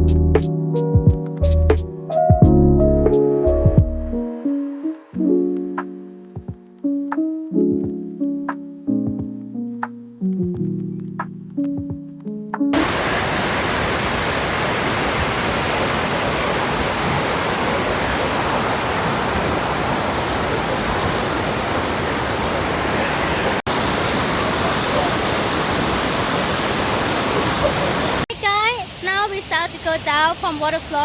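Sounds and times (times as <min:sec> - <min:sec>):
waterfall crashing: 0:12.8 - 0:31.0.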